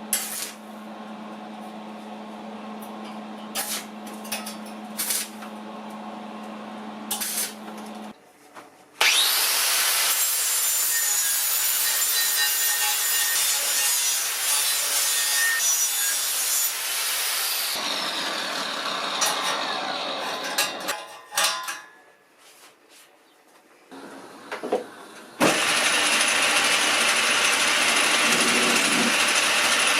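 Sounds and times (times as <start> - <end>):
power tool grinding: 9.0 - 21.0, 25.4 - 29.9
motor spinning down whine: 26.6 - 29.5.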